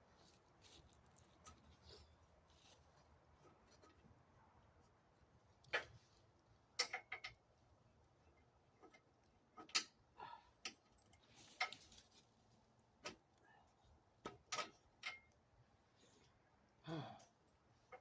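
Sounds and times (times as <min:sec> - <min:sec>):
clicks and knocks of tools: 0:06.8 - 0:07.4, 0:08.3 - 0:10.0, 0:14.2 - 0:15.4.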